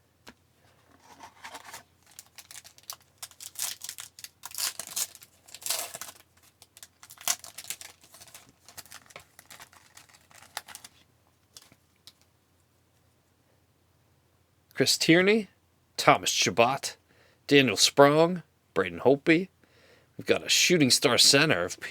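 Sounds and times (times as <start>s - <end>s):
cards rustling: 0.9s - 12.2s
foil wrapper crinkling and tearing: 1.3s - 11.8s.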